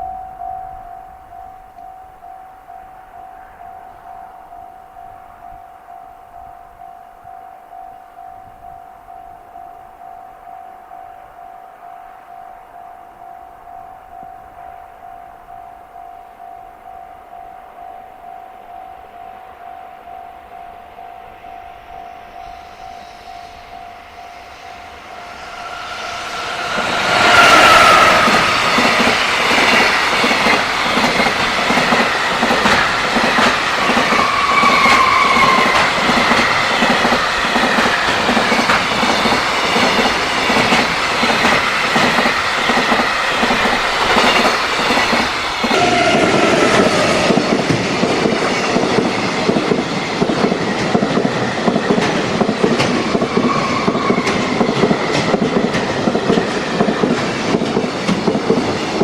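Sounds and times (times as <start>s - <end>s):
crossing warning bell ringing: 0.0s - 59.0s
train wagons clattering over rails: 25.4s - 59.0s.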